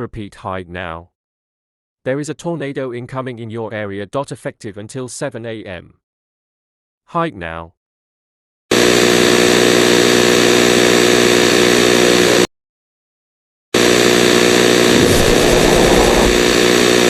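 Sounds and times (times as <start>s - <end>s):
distorted electronic alert buzz: 13.8s - 17.0s
low rumble: 14.8s - 17.0s.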